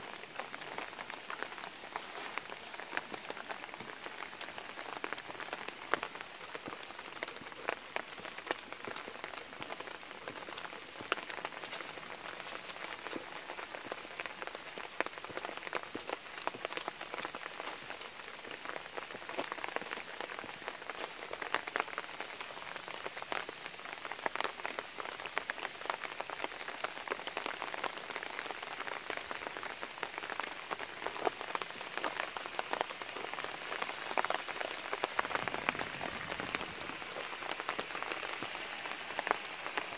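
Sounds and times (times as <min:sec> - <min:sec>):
light steady rain: 0:00.0 - 0:39.9
raindrops ticking: 0:00.0 - 0:39.9.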